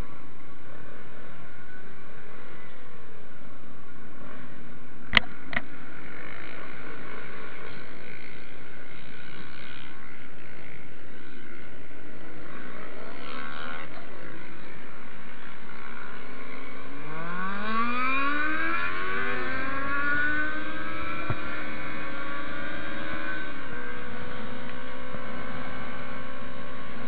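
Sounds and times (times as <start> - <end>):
motorcycle engine accelerating: 0.0 - 27.0.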